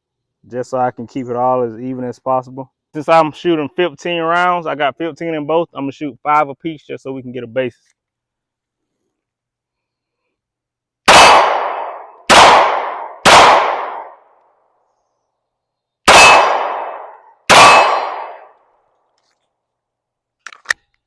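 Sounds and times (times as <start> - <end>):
pistol shots: 11.1 - 14.2, 16.1 - 18.5.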